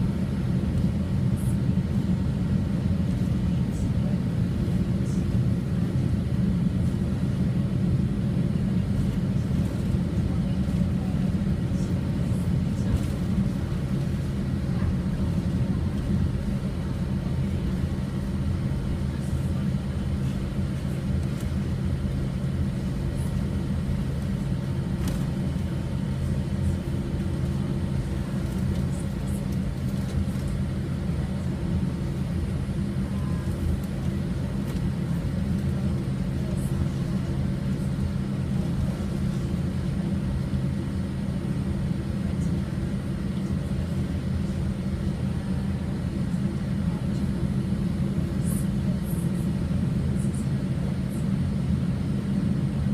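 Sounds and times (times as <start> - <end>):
airliner low drone: 0.0 - 52.9.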